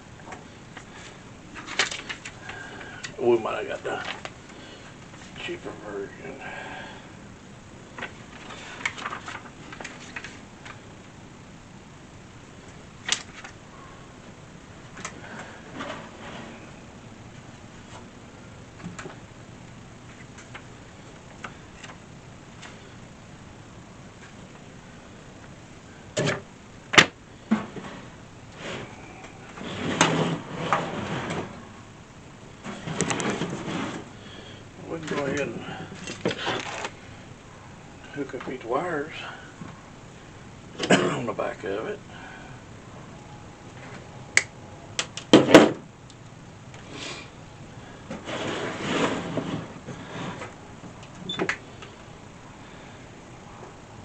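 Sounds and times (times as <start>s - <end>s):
rustling: 7.8s - 11.2s, 32.5s - 37.4s, 46.8s - 51.0s
scraping and rustling: 14.9s - 18.2s, 27.5s - 31.8s, 32.6s - 37.1s, 46.8s - 51.0s.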